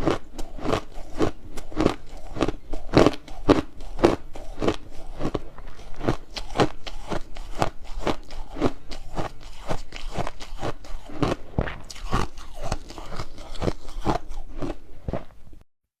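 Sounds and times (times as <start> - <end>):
ice being chewed: 0.0 - 15.4.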